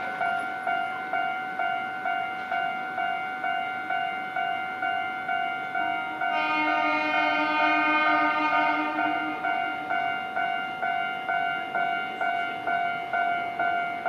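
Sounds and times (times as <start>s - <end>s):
level crossing alarm ringing: 0.0s - 14.0s
train horn: 6.0s - 10.1s.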